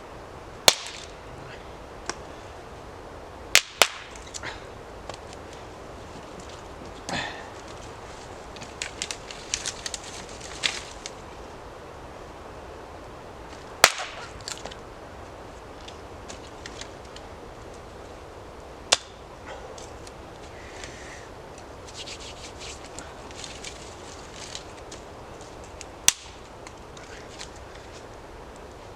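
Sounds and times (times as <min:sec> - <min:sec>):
sticks snapping: 0:00.7 - 0:01.2, 0:02.0 - 0:02.3, 0:03.5 - 0:05.6, 0:06.4 - 0:11.2, 0:13.5 - 0:14.8, 0:15.8 - 0:17.8, 0:18.9 - 0:28.7
wood rustling: 0:03.6 - 0:11.8, 0:13.4 - 0:28.9.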